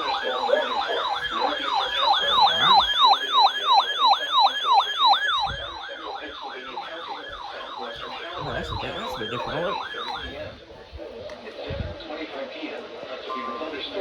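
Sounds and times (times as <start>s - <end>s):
siren yelping: 0.0s - 10.7s.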